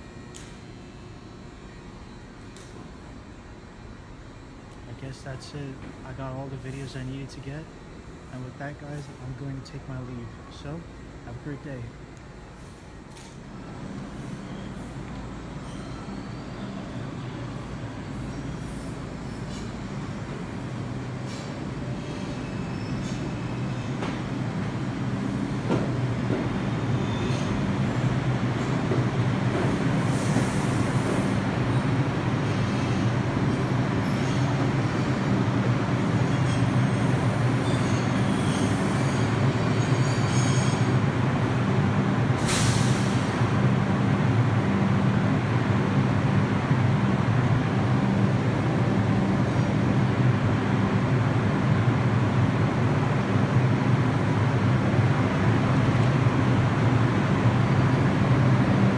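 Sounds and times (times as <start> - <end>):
subway train running: 0.0 - 58.9
hiss of air: 42.4 - 43.4.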